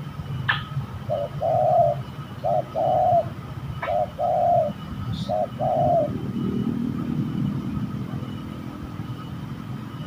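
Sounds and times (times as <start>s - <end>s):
dove cooing: 1.0s - 7.3s.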